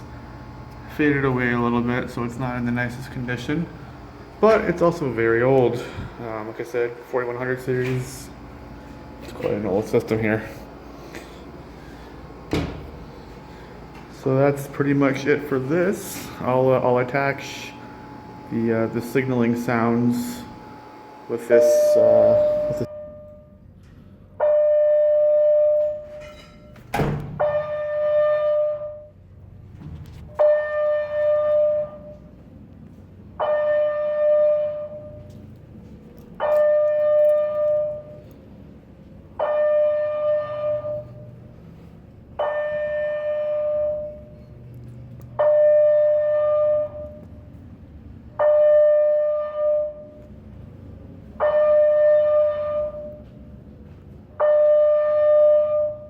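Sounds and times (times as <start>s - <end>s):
fire alarm horn: 13.1s - 23.7s, 24.4s - 26.3s, 27.3s - 29.3s, 30.2s - 32.4s, 33.3s - 35.5s, 36.4s - 38.4s, 39.3s - 44.6s, 45.2s - 47.5s, 48.3s - 50.3s, 51.2s - 53.4s, 54.3s - 56.0s.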